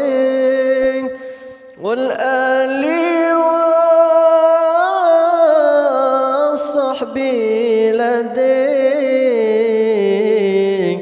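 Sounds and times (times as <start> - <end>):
solo voice singing: 0.0 - 11.0
singer breathing in: 1.2 - 1.8.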